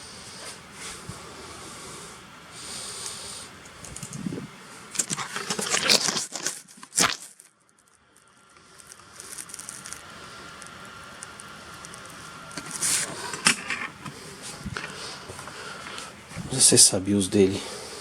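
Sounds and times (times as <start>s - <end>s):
background hiss: 0.0s - 18.0s
hands rustling and clicking: 3.0s - 4.3s, 8.6s - 16.1s.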